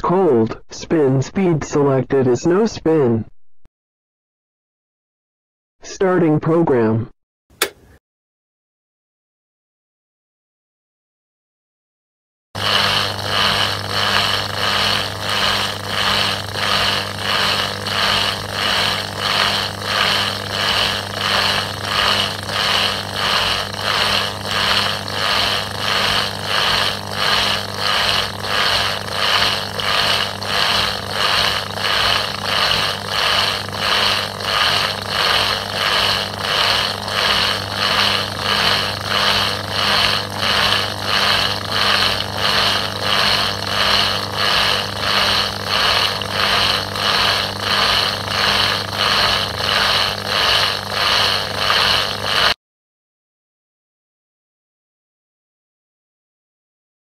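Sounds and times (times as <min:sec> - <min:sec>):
drain pump hum: 0:12.6 - 0:52.6
water pumped out rushing: 0:12.6 - 0:52.6.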